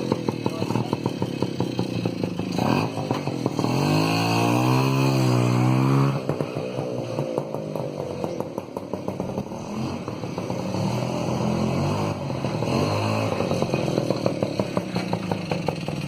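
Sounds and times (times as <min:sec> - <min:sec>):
moped engine idling: 0:00.0 - 0:03.6, 0:13.4 - 0:16.0.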